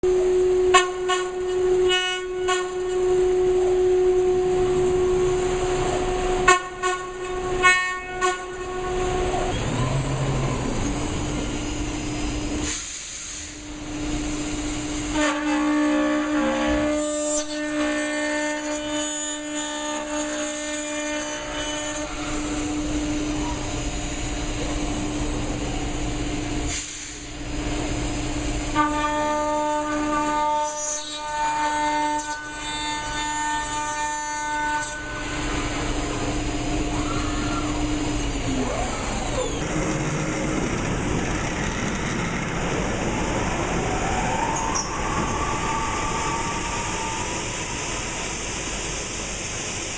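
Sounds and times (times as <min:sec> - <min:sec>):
machine spindle whining: 0:08.5 - 0:15.1, 0:32.2 - 0:49.9.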